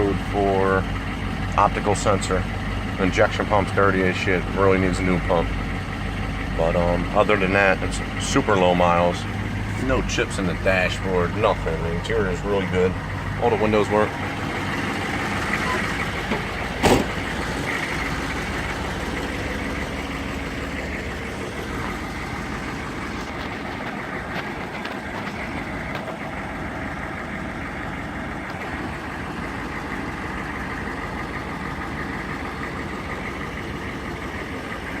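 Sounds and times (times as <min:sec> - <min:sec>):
diesel engine idling: 0:00.0 - 0:35.0.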